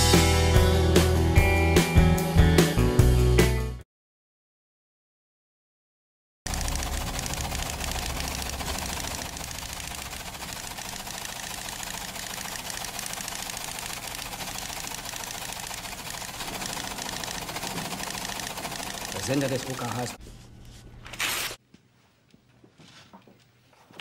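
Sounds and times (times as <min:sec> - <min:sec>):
typewriter clattering: 0:06.5 - 0:20.1.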